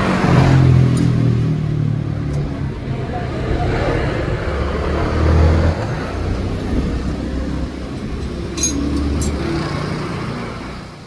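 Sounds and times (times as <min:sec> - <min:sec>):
motorcycle engine rumbling: 0:00.0 - 0:10.9
light metallic clinks: 0:08.0 - 0:09.6.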